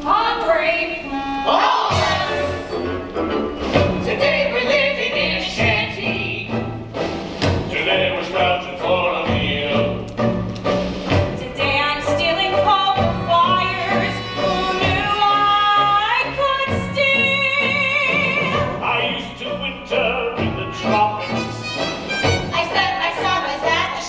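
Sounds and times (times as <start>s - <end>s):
instrumental accompaniment: 1.0s - 23.9s.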